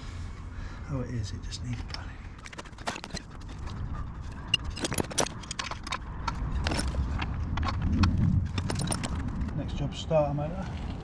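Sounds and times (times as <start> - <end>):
metallic clicks and knocks of tools: 1.7 - 9.6.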